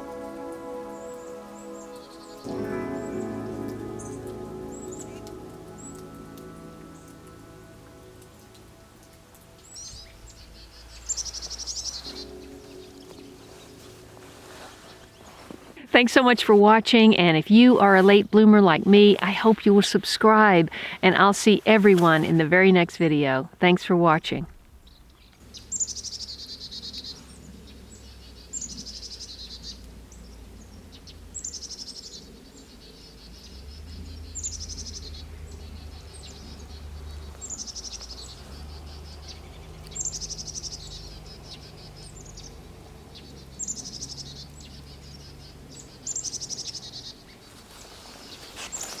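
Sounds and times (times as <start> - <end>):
songbird trilling: 9.6 - 13.8, 30.9 - 42.6.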